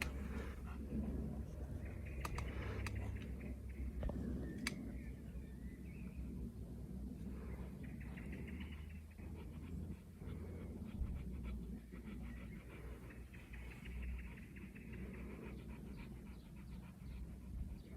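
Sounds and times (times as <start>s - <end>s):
sharp clicks: 2.1s - 3.3s, 4.0s - 4.8s.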